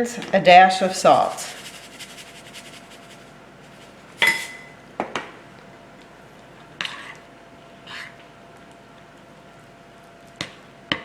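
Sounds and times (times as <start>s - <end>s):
utensil clinking against bowl: 4.2s - 4.8s.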